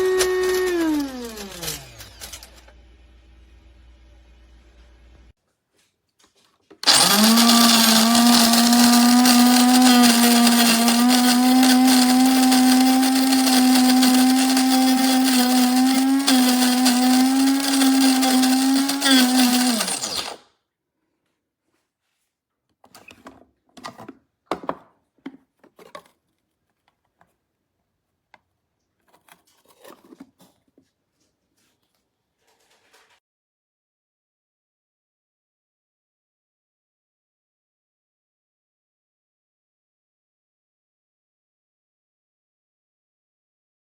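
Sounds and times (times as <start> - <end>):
coffee grinder motor running: 0.0 - 2.5, 6.8 - 20.4.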